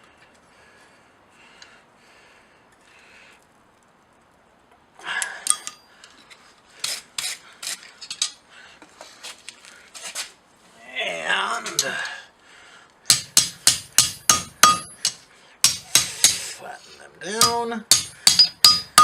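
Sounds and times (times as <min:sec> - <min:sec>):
metal-on-metal clinks and scrapes: 0:05.4 - 0:08.4.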